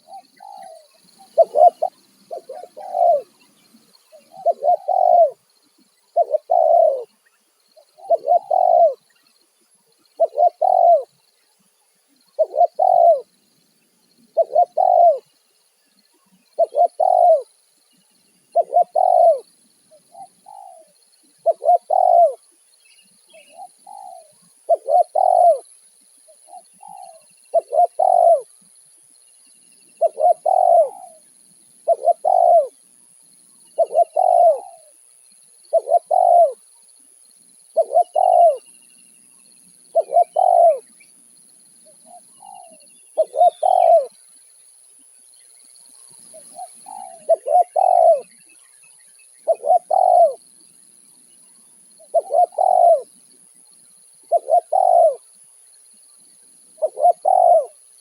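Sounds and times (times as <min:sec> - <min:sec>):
dove cooing: 0:00.0 - 0:07.2, 0:07.8 - 0:09.1, 0:10.1 - 0:11.1, 0:12.3 - 0:13.3, 0:14.3 - 0:15.3, 0:16.6 - 0:17.5, 0:18.5 - 0:22.5, 0:23.3 - 0:28.7, 0:30.0 - 0:32.8, 0:33.7 - 0:35.0, 0:35.7 - 0:36.7, 0:37.8 - 0:38.7, 0:39.9 - 0:41.0, 0:41.9 - 0:44.2, 0:46.2 - 0:48.4, 0:49.4 - 0:50.5, 0:52.0 - 0:53.2, 0:54.2 - 0:55.3, 0:56.8 - 0:57.8
small birds chirping: 0:00.0 - 0:58.0.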